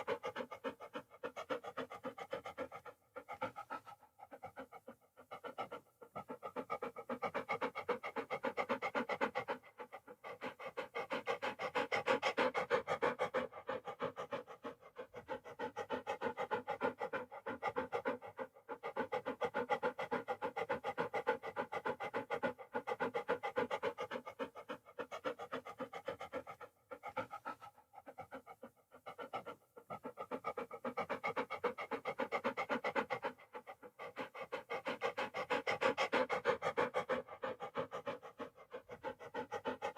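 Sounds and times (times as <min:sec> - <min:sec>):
dog panting: 0:00.0 - 0:39.9.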